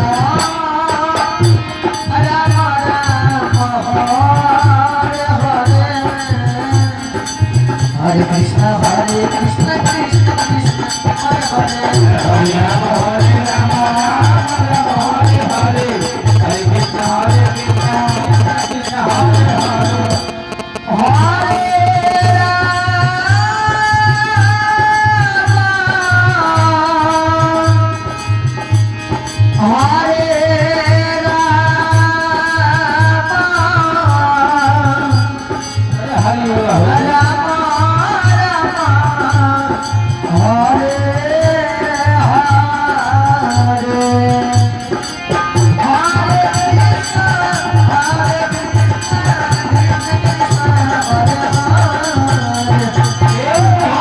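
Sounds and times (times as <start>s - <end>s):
jingling percussion: 0.1s - 22.6s, 23.2s - 54.0s
hand-drum beat: 14.7s - 22.5s.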